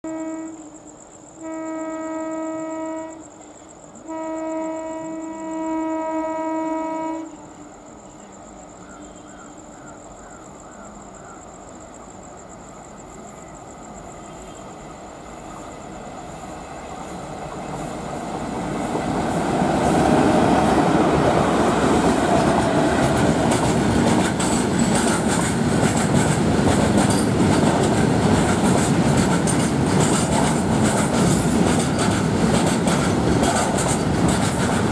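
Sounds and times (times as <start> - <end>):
locomotive horn blasts: 0.0 - 0.8, 1.4 - 3.2, 4.0 - 7.4
freight train rumbling past: 0.1 - 34.9
wheels clacking on rail joints: 17.0 - 34.9.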